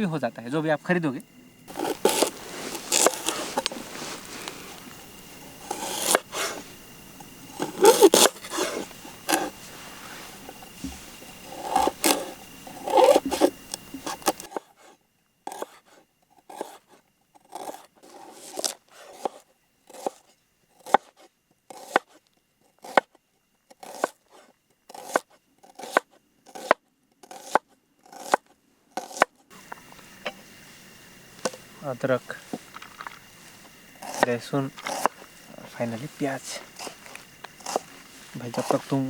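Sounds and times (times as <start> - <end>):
knife cutting vegetables: 1.7 - 14.7, 15.5 - 15.8, 16.4 - 16.8, 17.4 - 20.2, 20.8 - 22.2, 23.7 - 28.4, 29.0 - 29.3, 34.0 - 35.2, 36.5 - 39.0.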